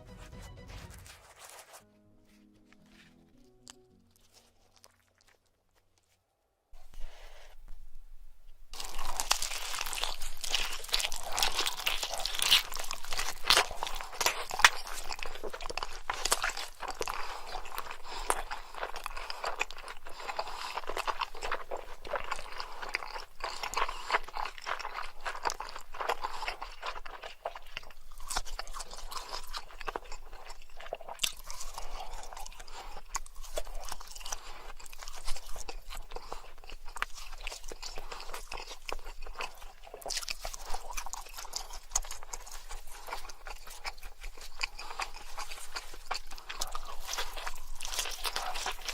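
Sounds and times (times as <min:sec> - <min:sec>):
crunchy food chewing: 0:02.7 - 0:06.2, 0:06.8 - 0:48.9.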